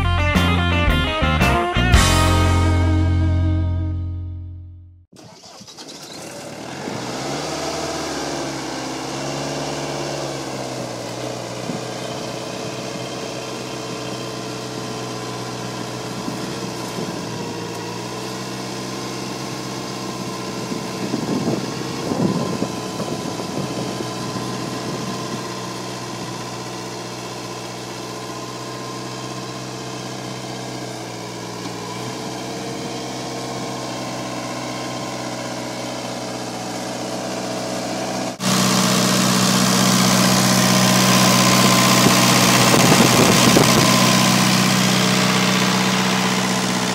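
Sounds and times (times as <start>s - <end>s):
stump grinder engine running: 5.2s - 46.9s.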